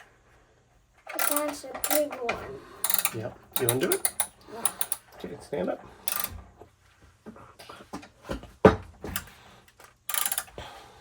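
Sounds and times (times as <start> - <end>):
socket ratchet clicking: 1.1 - 2.1, 2.8 - 5.0, 6.1 - 6.3, 10.1 - 10.6.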